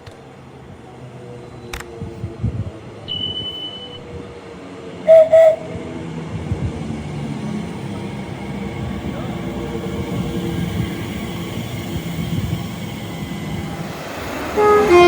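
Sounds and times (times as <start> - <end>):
train rumble: 0.0 - 15.0
train horn blasts: 5.1 - 5.8, 14.6 - 15.0.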